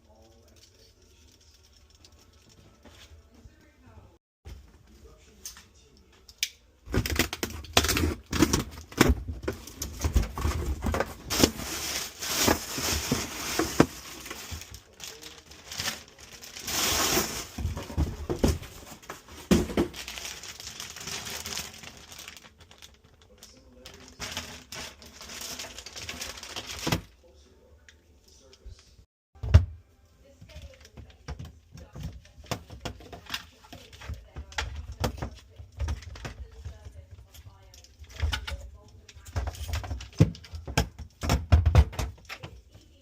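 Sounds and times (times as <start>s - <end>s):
thin material crinkling and tearing: 6.9s - 18.0s, 18.8s - 27.1s.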